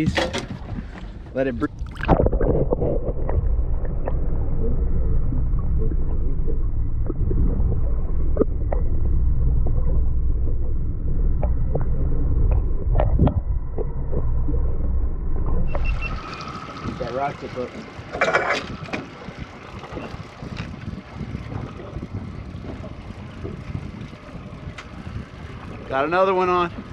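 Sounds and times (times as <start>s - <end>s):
underwater rumble of moving water: 0.0s - 26.9s
underwater clicks and knocks: 0.1s - 4.4s, 9.6s - 14.6s.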